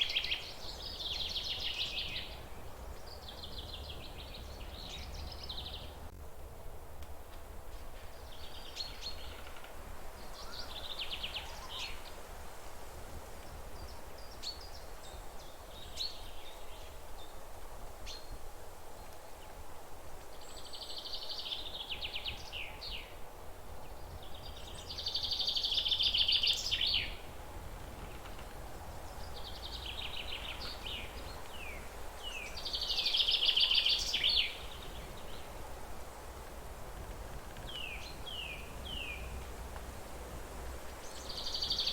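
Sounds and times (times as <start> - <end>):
songbird singing trills: 23.9 - 27.3, 28.0 - 35.5, 41.0 - 41.9.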